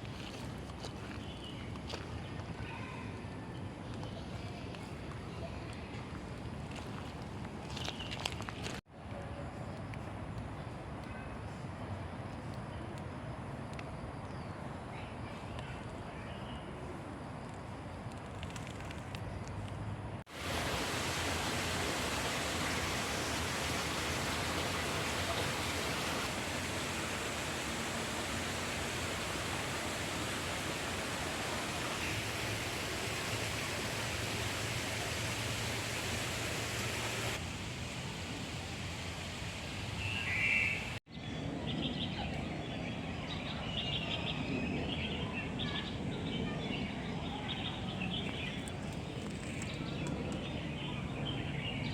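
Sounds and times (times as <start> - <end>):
steady rushing noise: 20.3 - 40.3.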